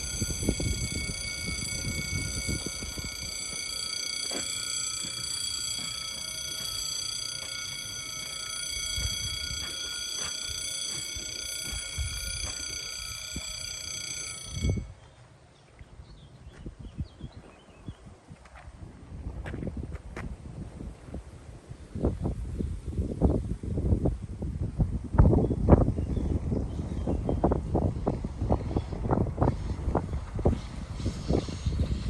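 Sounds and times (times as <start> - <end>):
high-pitched electronic warning tone: 0.0 - 15.0.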